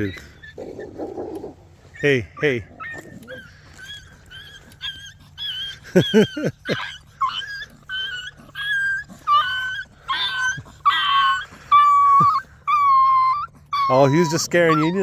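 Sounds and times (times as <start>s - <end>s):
puppy whimpering squeals: 0.0s - 15.0s
puppy yelping: 0.0s - 15.0s.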